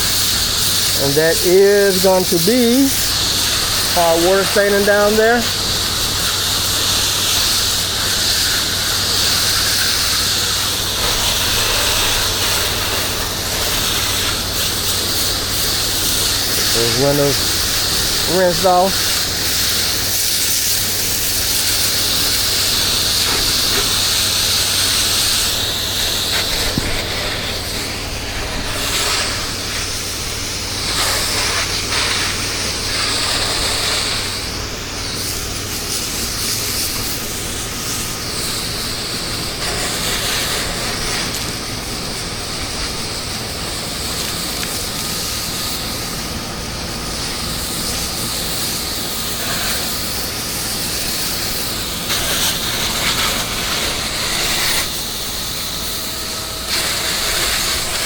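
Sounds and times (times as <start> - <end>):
pressure washer spray hissing: 0.0 - 58.0.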